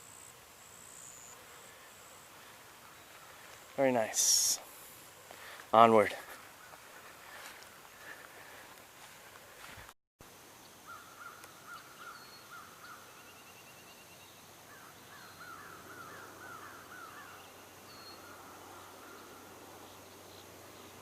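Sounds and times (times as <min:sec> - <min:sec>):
faint outdoor hiss: 0:00.0 - 0:21.0
crows cawing: 0:06.2 - 0:08.8, 0:10.9 - 0:13.0, 0:14.7 - 0:17.4.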